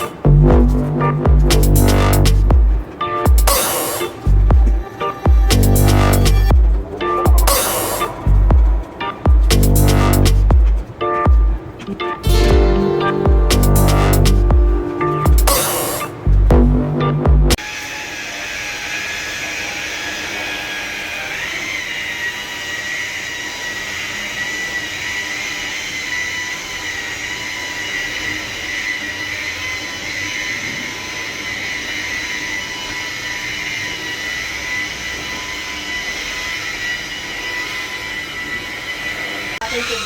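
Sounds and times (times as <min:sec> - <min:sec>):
power sander on car paint: 0:17.6 - 0:40.0.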